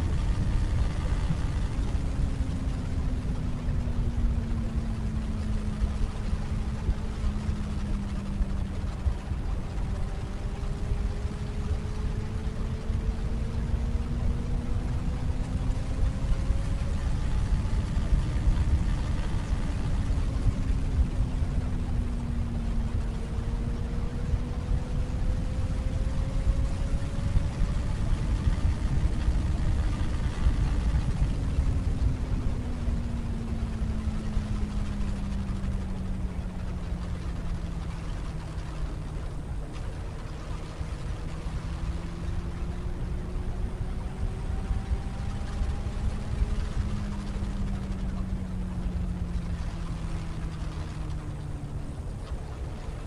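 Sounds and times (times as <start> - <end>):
wind buffeting microphone: 0.0 - 53.0.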